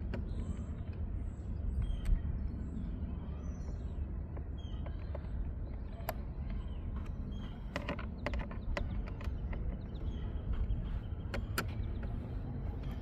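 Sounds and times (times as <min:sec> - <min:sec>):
low background rumble: 0:00.0 - 0:13.0
screwdriver and plastic parts clicking: 0:07.7 - 0:09.8.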